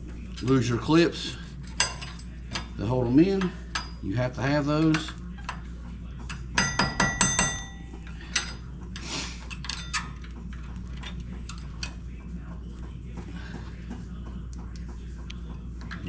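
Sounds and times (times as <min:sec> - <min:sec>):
metal brake pads clinking: 0:06.3 - 0:08.6.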